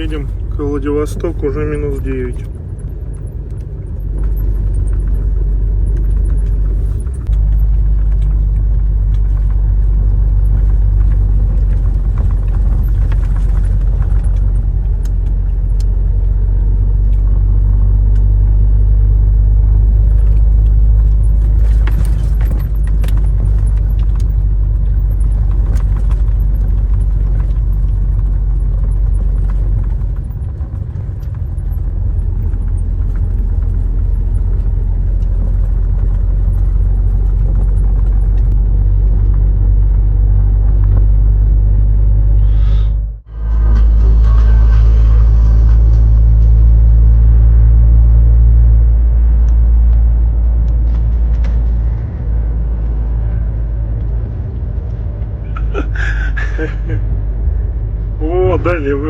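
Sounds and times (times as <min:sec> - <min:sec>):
light rattles: 0:00.0 - 0:38.6
truck engine and road noise: 0:00.0 - 0:59.0.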